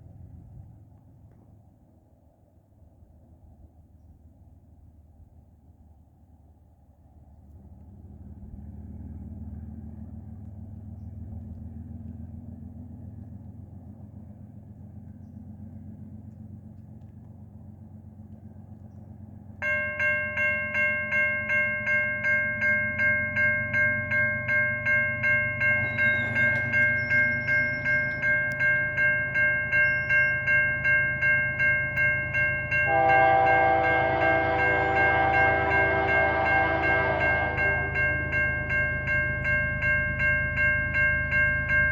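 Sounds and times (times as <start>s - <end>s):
diesel locomotive engine rumble: 0.0s - 41.9s
locomotive air horn: 32.9s - 38.7s.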